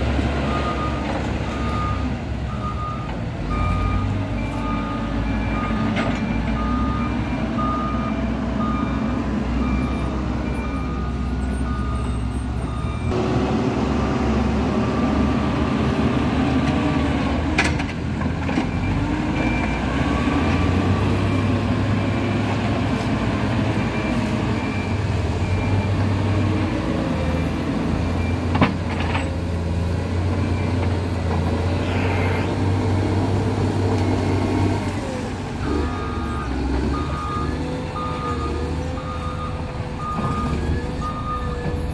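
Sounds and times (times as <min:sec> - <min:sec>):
diesel engines of heavy machines: 0:00.0 - 0:41.9
reversing alarm beeping: 0:00.5 - 0:13.2, 0:35.6 - 0:41.9.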